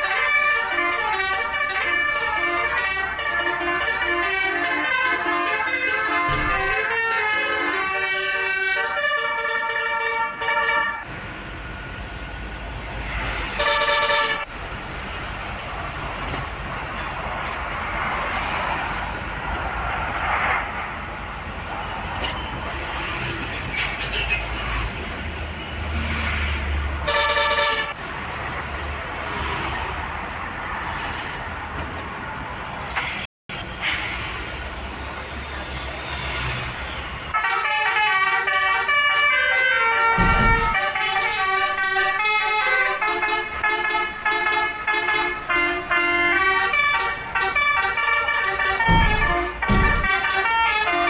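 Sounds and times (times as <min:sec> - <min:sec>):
musical air horn: 0:00.0 - 0:11.0, 0:13.4 - 0:14.5, 0:27.0 - 0:28.0, 0:37.3 - 0:51.0
traffic noise: 0:00.0 - 0:51.0.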